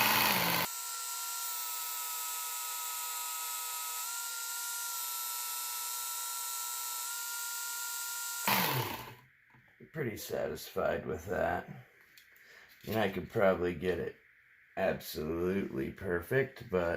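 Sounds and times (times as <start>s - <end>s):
belt sharpener whining: 0.0s - 9.2s
motor winding down: 0.0s - 9.2s.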